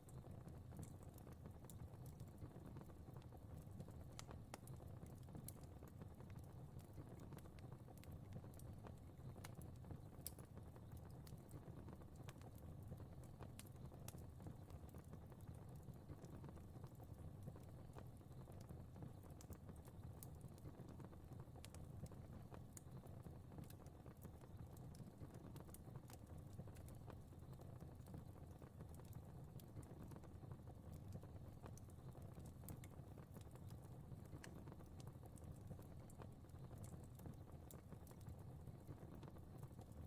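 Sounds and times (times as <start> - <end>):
fireplace fire crackling: 0.0 - 40.0
low rumble of flames: 0.1 - 40.0.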